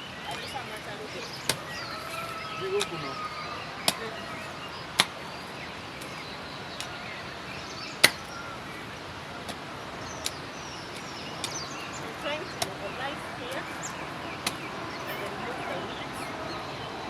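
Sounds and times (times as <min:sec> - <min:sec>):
hoe chopping into soil: 0:02.7 - 0:03.0, 0:03.8 - 0:04.2, 0:05.0 - 0:05.3, 0:08.0 - 0:08.4, 0:09.4 - 0:12.0.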